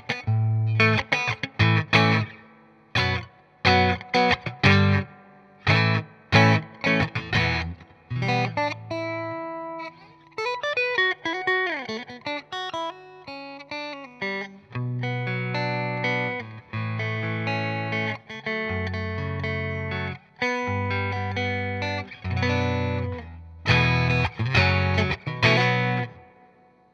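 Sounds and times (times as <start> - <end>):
electric guitar playing: 0.0 - 26.9.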